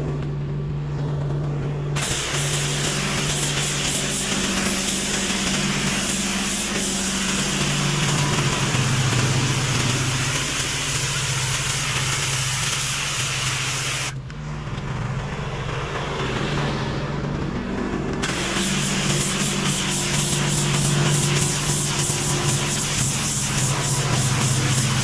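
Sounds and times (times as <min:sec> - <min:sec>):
pressure washer engine running: 0:01.5 - 0:14.2, 0:17.9 - 0:25.0
water spray hissing: 0:02.0 - 0:14.2, 0:18.2 - 0:25.0.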